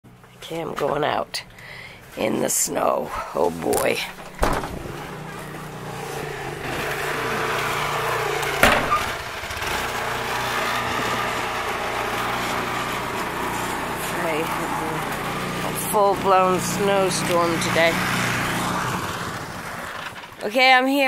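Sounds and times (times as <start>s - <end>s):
snowblower engine running: 4.2s - 20.6s
sharp crack: 6.6s - 13.7s.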